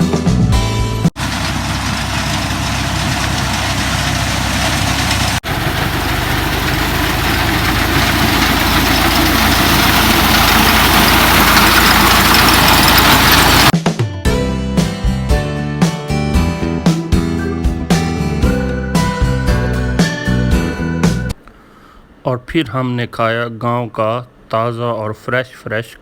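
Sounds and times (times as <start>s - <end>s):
reaper engine running: 1.2s - 13.7s.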